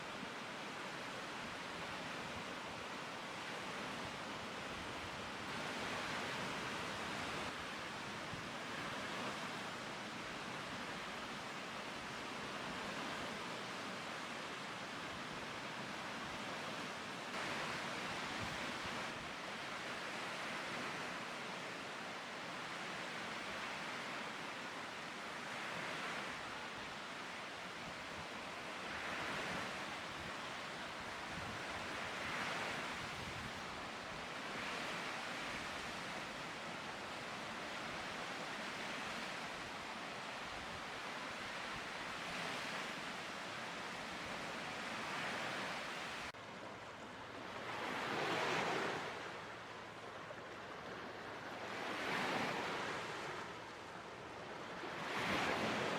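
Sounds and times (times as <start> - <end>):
lake waves washing onto shore: 22.6 - 46.3.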